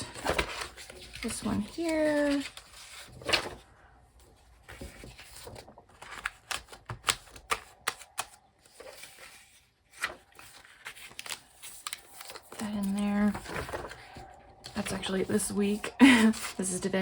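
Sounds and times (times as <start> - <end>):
paper rustling: 0.0 - 17.0.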